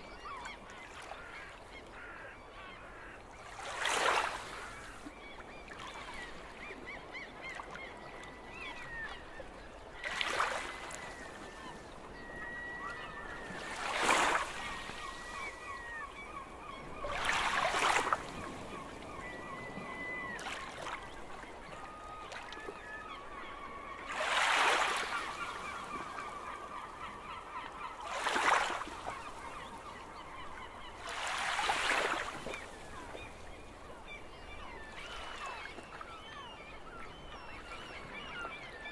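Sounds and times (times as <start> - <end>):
gulls calling: 10.0 - 38.9.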